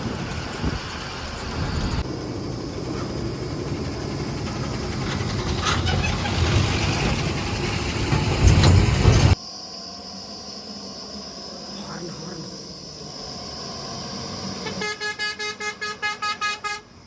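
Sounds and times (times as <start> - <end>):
heavy diesel engine running: 0.0 - 9.4.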